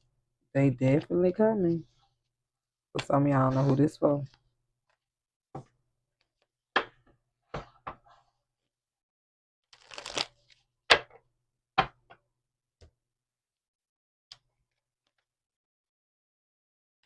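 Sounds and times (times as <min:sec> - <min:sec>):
cards rustling: 0:09.8 - 0:10.6.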